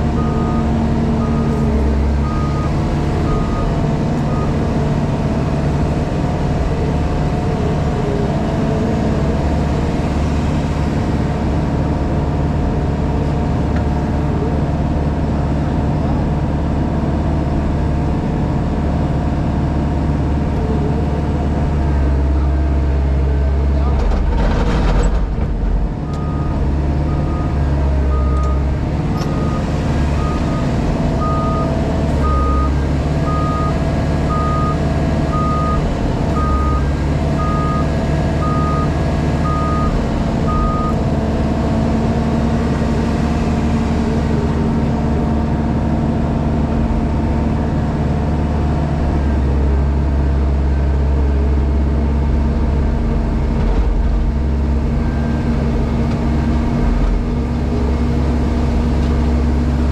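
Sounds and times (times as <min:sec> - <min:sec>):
diesel engine running: 0:00.0 - 0:59.9
reversing alarm beeping: 0:02.2 - 0:03.7, 0:29.2 - 0:35.8, 0:36.4 - 0:41.0.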